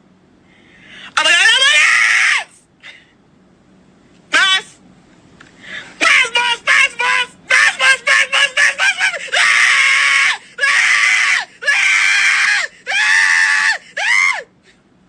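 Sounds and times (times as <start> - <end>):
person screaming: 1.2 - 2.6, 6.0 - 14.5.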